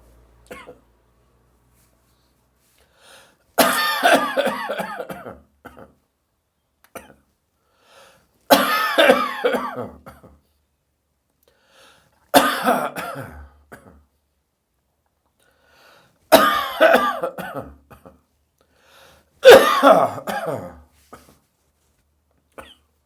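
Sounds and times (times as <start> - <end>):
person coughing: 0.5 - 0.8, 3.6 - 6.0, 8.5 - 10.4, 12.3 - 14.0, 16.3 - 18.2, 19.4 - 21.4, 22.5 - 22.9
faint breaths: 1.8 - 3.6, 7.6 - 8.4, 11.4 - 12.3, 15.4 - 16.3, 18.6 - 19.4.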